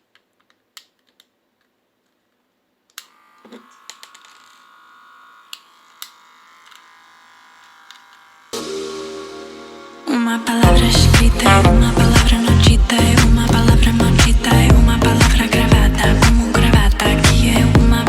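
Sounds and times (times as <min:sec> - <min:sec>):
small electric motor whirring: 0:03.0 - 0:08.7.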